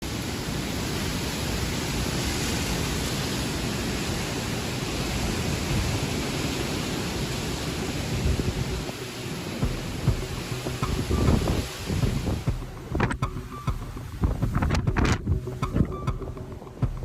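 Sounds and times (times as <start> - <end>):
wind blowing across microphone: 0.1 - 17.0.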